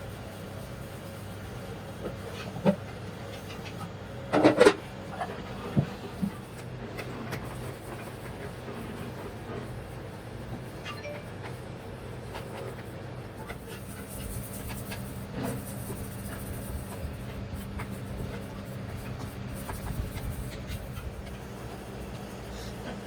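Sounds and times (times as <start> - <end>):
low mechanical hum: 0.0 - 23.0
light clicks and scrapes: 12.3 - 23.0.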